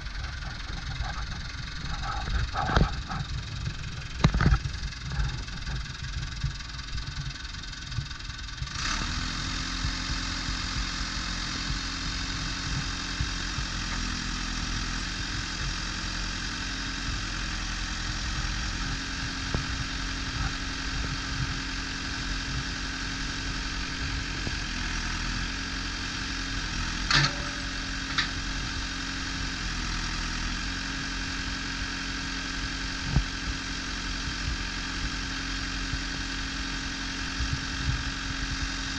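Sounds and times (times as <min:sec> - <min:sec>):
diesel engine running: 0:00.0 - 0:38.9
steady hum changing pitch: 0:00.0 - 0:38.9
sharp metal clanks: 0:27.0 - 0:28.7.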